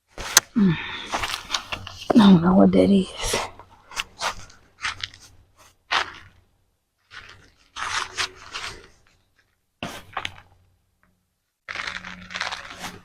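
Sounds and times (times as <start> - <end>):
hands digging through soil: 7.1 - 9.2, 11.7 - 13.0.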